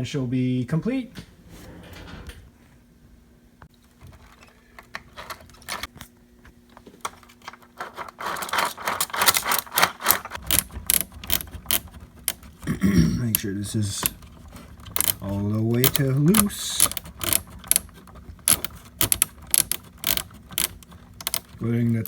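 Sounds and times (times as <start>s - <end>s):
small plastic parts clicking and rattling: 3.8s - 6.1s, 6.7s - 22.0s.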